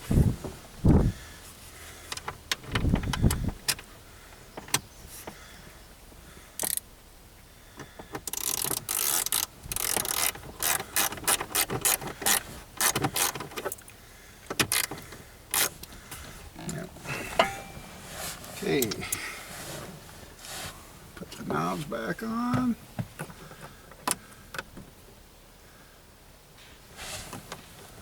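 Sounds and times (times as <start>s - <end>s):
clicks and knocks of parts handled: 6.6s - 6.9s, 8.1s - 13.9s
ratchet clicking: 6.6s - 6.9s, 8.2s - 13.4s, 14.6s - 15.8s.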